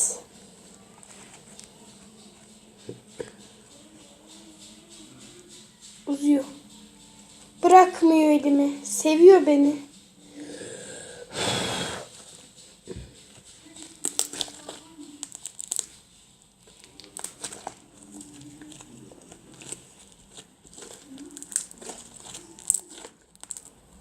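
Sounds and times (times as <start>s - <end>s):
slime squelching and popping: 13.8s - 15.9s, 16.8s - 23.8s.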